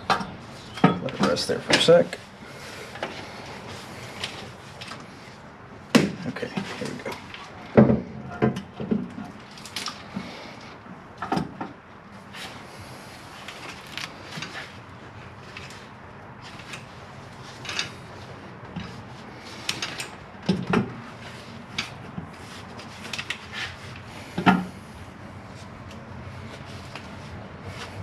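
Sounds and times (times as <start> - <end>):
clicks knocks and scrapes of parts: 17.5 - 18.0, 18.7 - 24.7.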